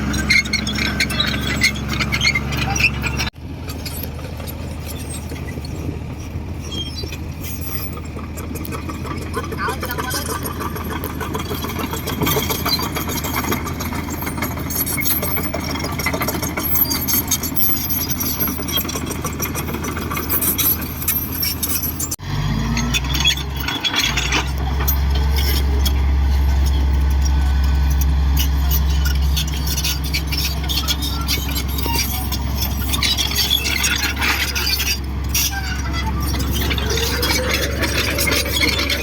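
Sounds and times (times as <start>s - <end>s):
bulldozer diesel engine: 0.0s - 39.0s
metallic clatter: 0.0s - 39.0s
deep engine drone: 22.2s - 39.0s.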